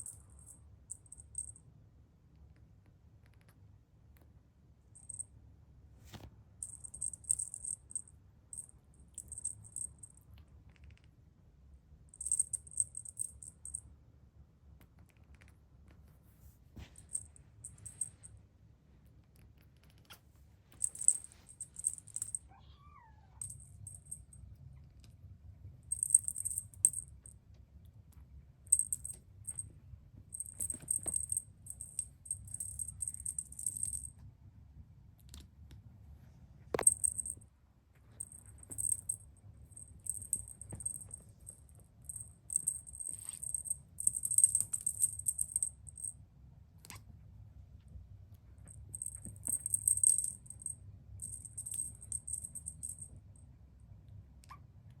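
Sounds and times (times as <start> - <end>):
faint low hum: 0.0 - 55.0
small bell jingling: 20.8 - 22.6, 23.2 - 24.4, 25.9 - 27.3, 28.7 - 29.7, 30.4 - 34.1, 36.8 - 37.4, 38.2 - 46.1, 48.7 - 53.2.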